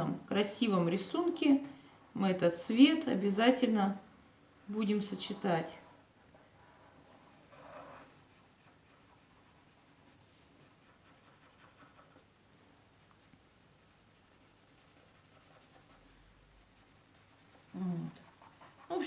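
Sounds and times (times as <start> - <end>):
drawing tool rubbing on paper: 6.2 - 12.2, 13.0 - 19.0.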